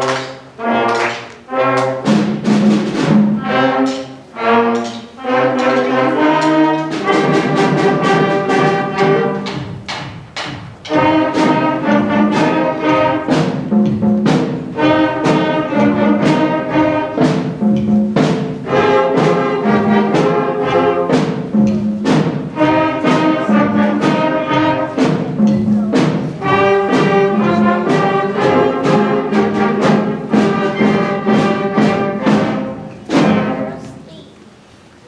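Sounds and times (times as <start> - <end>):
sharp drum strokes: 0.0 - 34.6
band playing blues: 10.8 - 34.1.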